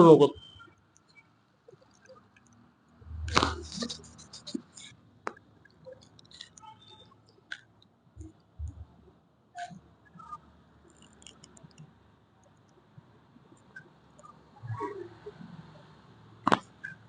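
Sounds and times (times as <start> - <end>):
spinal joints cracking: 3.0 - 7.6, 10.9 - 11.9.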